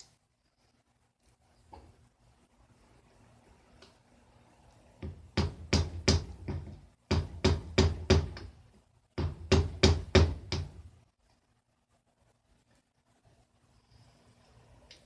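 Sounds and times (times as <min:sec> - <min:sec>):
hammer knocking on metal: 0:05.0 - 0:08.6, 0:09.2 - 0:10.8.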